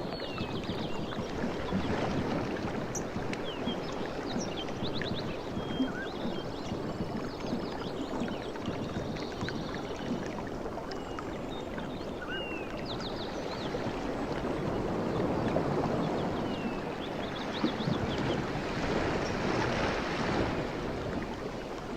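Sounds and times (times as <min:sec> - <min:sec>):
sea waves lapping on shore: 0:00.0 - 0:21.9.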